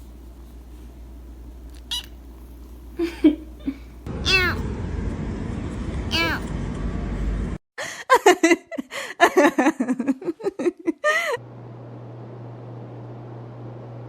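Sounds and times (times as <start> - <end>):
steady low hum: 0.0 - 7.6
person giggling and laughing: 3.0 - 3.9, 7.8 - 11.4.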